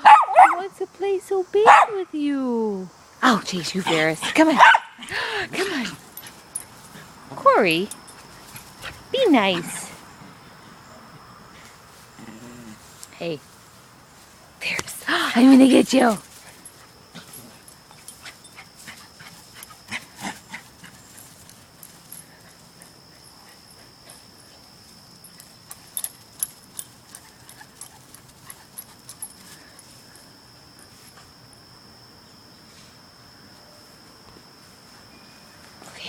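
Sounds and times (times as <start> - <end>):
faint high whine: 0.0 - 36.0.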